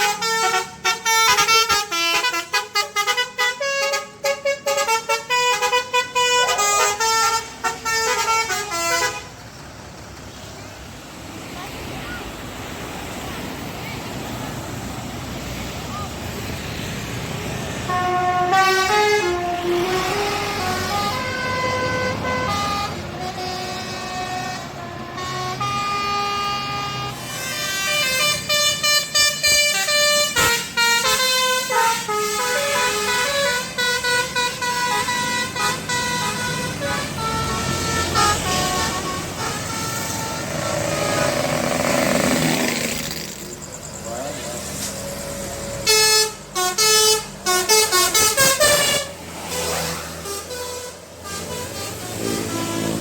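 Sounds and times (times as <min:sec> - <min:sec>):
musical air horn playing a tune: 0:00.0 - 0:09.3, 0:17.9 - 0:41.9, 0:44.8 - 0:53.0.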